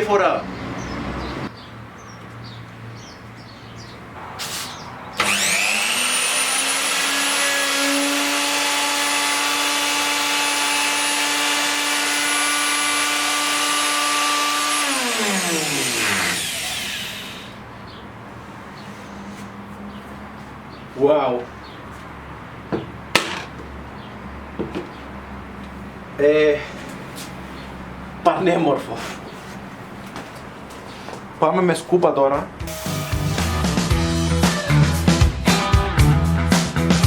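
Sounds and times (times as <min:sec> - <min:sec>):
wood router motor whining: 0:05.2 - 0:17.6, 0:32.7 - 0:33.9.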